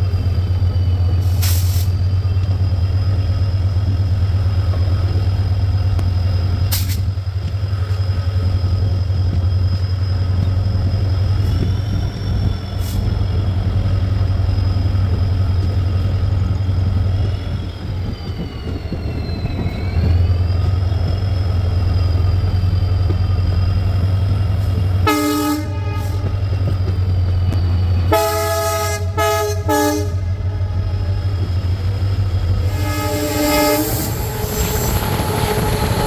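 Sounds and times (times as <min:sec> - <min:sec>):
diesel locomotive engine hum: 0:00.0 - 0:36.0
high whine: 0:08.4 - 0:36.0.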